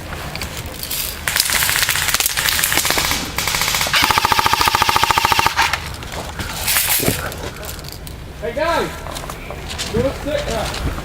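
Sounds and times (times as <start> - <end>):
airsoft guns firing full auto: 1.2 - 5.8.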